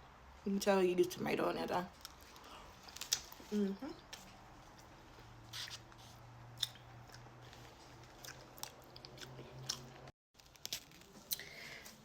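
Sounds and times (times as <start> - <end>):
person chewing food: 5.5 - 11.5.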